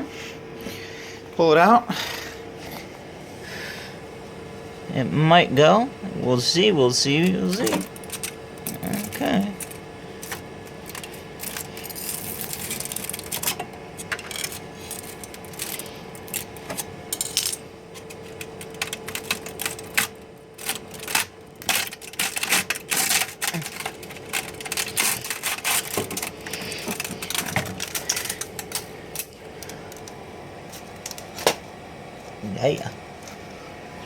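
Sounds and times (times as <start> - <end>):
faint steady hum: 0.0 - 34.0
hard plastic clicks and cracks: 18.0 - 30.2.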